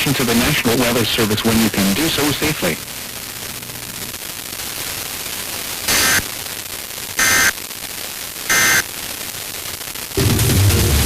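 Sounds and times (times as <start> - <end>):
radio static: 0.0 - 10.2
screeching data bursts: 5.9 - 6.4, 7.2 - 7.6, 8.5 - 8.9.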